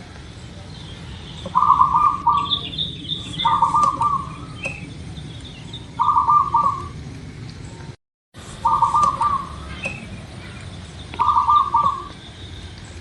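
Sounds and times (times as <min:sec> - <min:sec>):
small birds chirping: 0:00.0 - 0:13.0
dove cooing: 0:01.5 - 0:04.9, 0:06.0 - 0:07.0, 0:08.6 - 0:10.6, 0:11.2 - 0:12.2.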